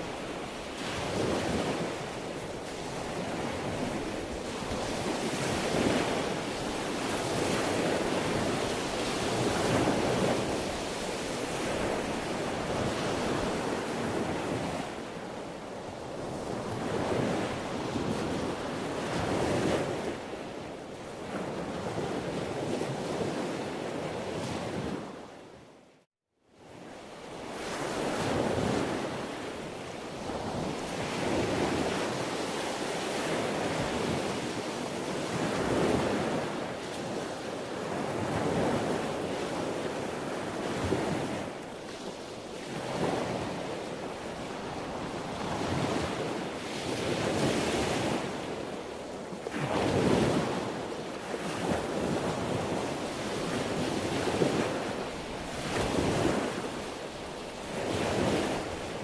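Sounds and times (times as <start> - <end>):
sea waves breaking: 27.4 - 59.0.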